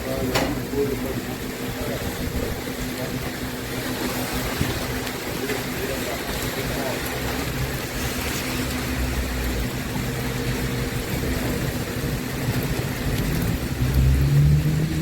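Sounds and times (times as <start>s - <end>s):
heavy rain hiss: 0.0s - 15.0s
vehicle engine humming: 3.1s - 15.0s.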